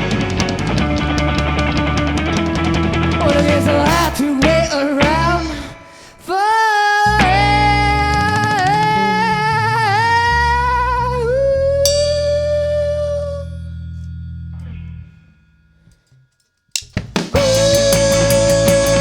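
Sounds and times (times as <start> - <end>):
rock band playing live: 0.0 - 5.8, 17.2 - 19.0
drum hits: 16.8 - 19.0.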